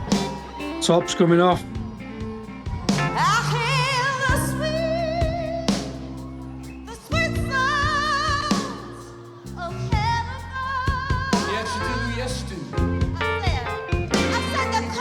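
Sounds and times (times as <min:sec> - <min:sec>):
rock band sustained chords: 0:00.0 - 0:06.2, 0:12.8 - 0:15.0
woman singing with vibrato: 0:02.2 - 0:05.7, 0:06.9 - 0:12.2, 0:13.0 - 0:15.0.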